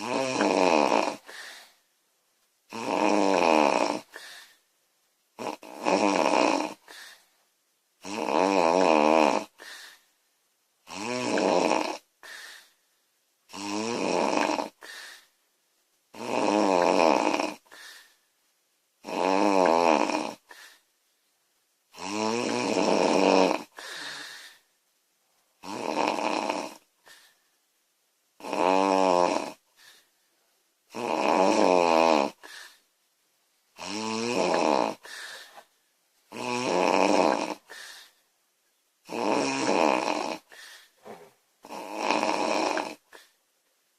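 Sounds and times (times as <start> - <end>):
woman snoring loudly: 0.0 - 1.5, 2.7 - 4.3, 5.4 - 7.1, 8.0 - 9.8, 10.8 - 12.4, 13.5 - 15.0, 16.1 - 17.8, 19.0 - 20.6, 21.9 - 24.6, 25.6 - 26.9, 28.4 - 29.6, 30.9 - 32.6, 33.8 - 35.4, 36.3 - 37.8, 39.0 - 40.6, 41.6 - 43.2
quiet breath: 1.1 - 2.0, 4.0 - 4.8, 6.7 - 7.5, 9.4 - 10.3, 12.1 - 13.1, 14.4 - 15.5, 17.5 - 18.4, 20.3 - 21.0, 23.7 - 25.6, 26.8 - 27.7, 29.6 - 30.6, 32.3 - 33.0, 34.9 - 35.9, 37.4 - 38.4, 40.2 - 41.5, 42.7 - 43.6.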